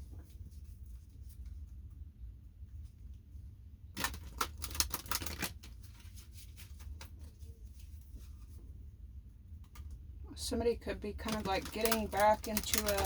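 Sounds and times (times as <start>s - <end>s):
steady low hum: 0.0s - 13.0s
cards being shuffled: 4.0s - 8.3s, 11.2s - 13.0s.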